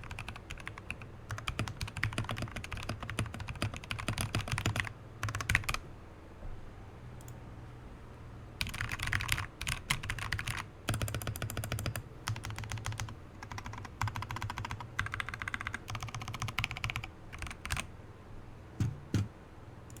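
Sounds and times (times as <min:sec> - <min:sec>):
mechanical keyboard typing: 0:00.0 - 0:05.8, 0:08.6 - 0:17.9.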